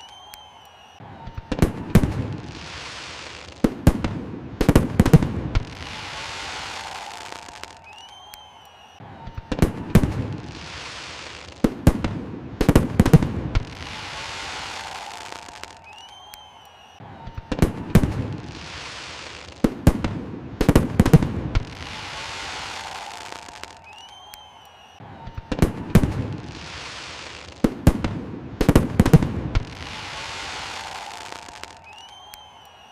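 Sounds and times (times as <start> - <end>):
firework rising whistle: 0.0 - 12.0, 12.6 - 19.8, 20.6 - 27.8, 28.6 - 32.9
firework bangs: 0.0 - 32.9
hissing crackle: 1.9 - 8.2, 9.9 - 16.2, 25.9 - 32.8.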